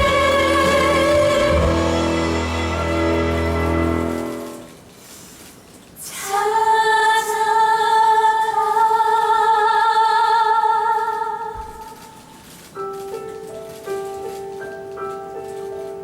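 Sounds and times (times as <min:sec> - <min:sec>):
woman singing long held note: 0:00.0 - 0:04.7
instrumental notes: 0:00.0 - 0:04.9.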